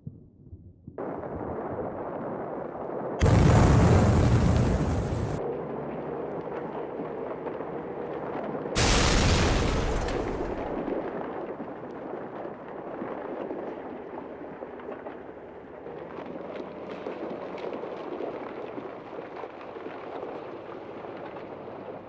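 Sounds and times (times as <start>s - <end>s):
loud explosion boom: 8.8s - 10.9s.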